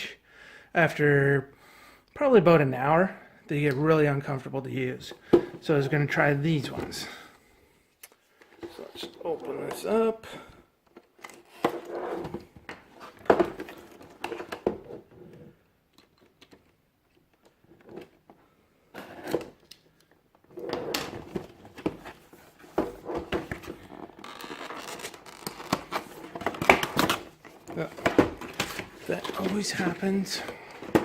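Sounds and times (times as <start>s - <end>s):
cardboard and plastic rustling: 10.9s - 15.1s, 21.1s - 31.0s.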